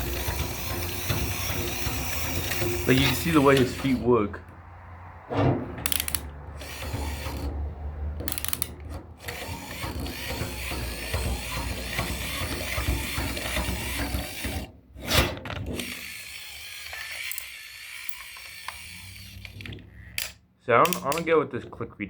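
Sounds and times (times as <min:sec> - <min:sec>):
toy wind-up mechanism clicking: 0:00.0 - 0:04.1, 0:05.9 - 0:07.5, 0:08.3 - 0:14.7, 0:15.8 - 0:21.2.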